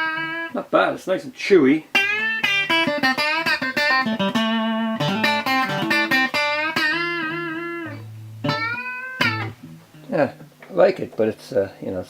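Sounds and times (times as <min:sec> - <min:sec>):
electric guitar notes: 0:00.0 - 0:00.6, 0:01.9 - 0:10.6.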